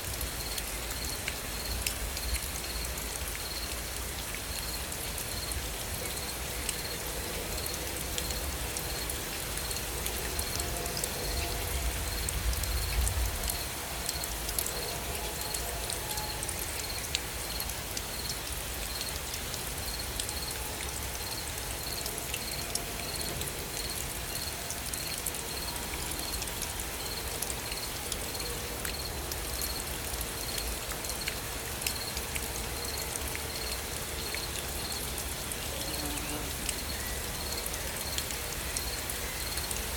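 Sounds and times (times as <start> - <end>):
gentle rain falling: 0.0 - 39.9.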